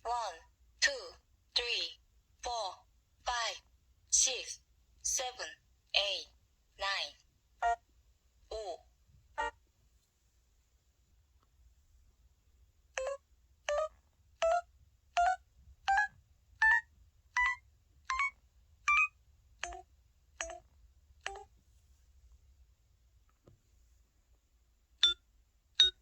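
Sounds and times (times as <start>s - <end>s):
phone keypad melody beeps: 13.0s - 16.8s, 17.4s - 19.8s, 20.4s - 20.6s, 21.2s - 21.5s, 25.0s - 25.2s, 25.8s - 26.0s.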